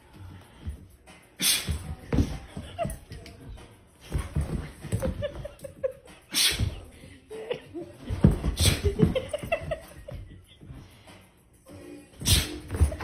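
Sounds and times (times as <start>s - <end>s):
person laughing: 4.9s - 10.6s.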